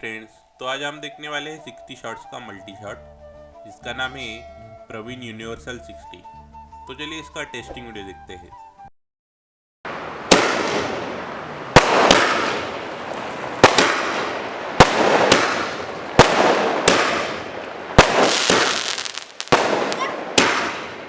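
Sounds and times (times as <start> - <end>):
crackling hiss: 9.9 - 21.0
firework bangs: 9.9 - 21.0.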